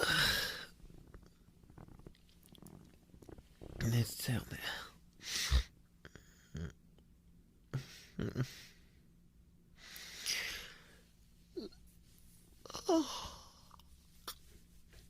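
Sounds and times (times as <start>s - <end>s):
man sighing: 0.0s - 0.7s, 12.7s - 13.6s
soft rustles: 11.1s - 12.7s, 13.7s - 15.0s.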